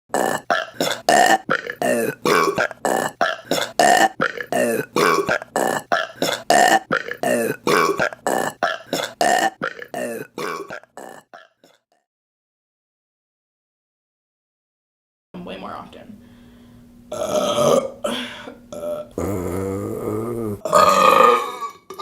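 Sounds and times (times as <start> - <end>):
woman burping: 0.1 - 11.8, 17.1 - 22.0.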